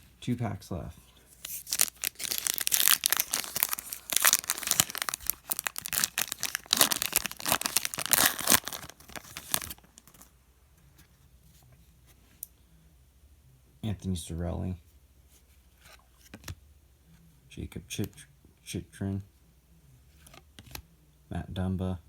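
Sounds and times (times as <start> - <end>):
wrapper tearing and crinkling: 1.4 - 10.3.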